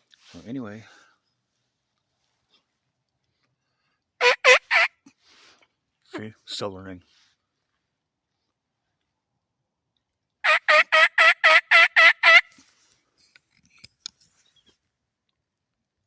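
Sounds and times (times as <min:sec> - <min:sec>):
turkey call yelps: 0:04.2 - 0:05.0, 0:10.4 - 0:12.5.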